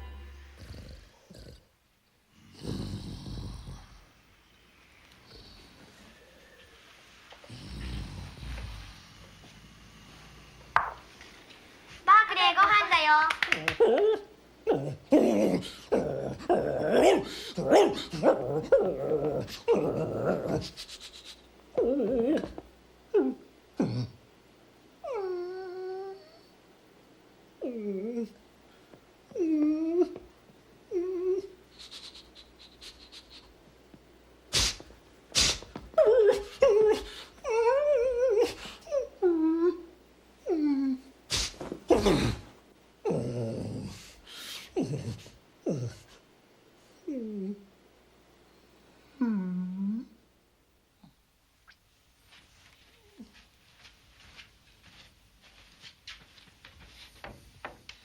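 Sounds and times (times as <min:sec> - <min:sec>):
dog whimpering and whining: 0:21.8 - 0:23.5, 0:25.0 - 0:26.5, 0:27.6 - 0:28.4, 0:29.3 - 0:30.2, 0:30.9 - 0:31.6, 0:36.0 - 0:41.0.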